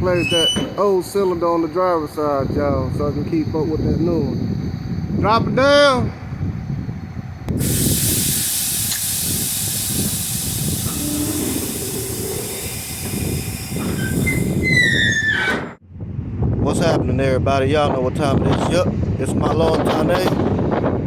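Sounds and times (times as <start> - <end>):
high falling squeals: 0.0 - 1.3, 10.8 - 15.8
compressed air hissing: 7.5 - 15.2.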